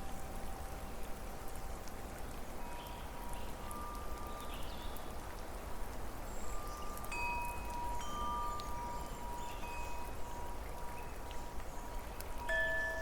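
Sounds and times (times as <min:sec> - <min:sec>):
chimes ringing: 0:12.4 - 0:13.0.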